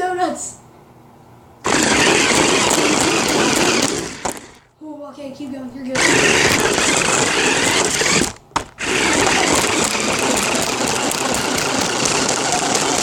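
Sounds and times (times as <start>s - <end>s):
radio-controlled car driving: 1.7s - 4.6s, 6.0s - 13.0s.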